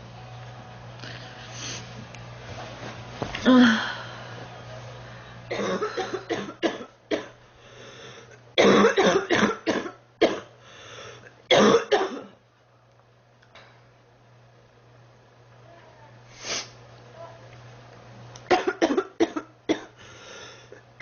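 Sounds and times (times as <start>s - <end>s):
girl coughing: 5.5s - 7.3s, 8.6s - 10.5s, 11.5s - 12.3s, 18.5s - 20.0s.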